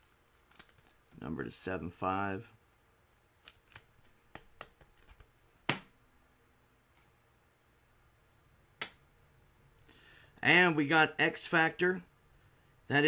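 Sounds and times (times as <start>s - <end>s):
trading cards tapping and flicking: 3.4s - 5.9s.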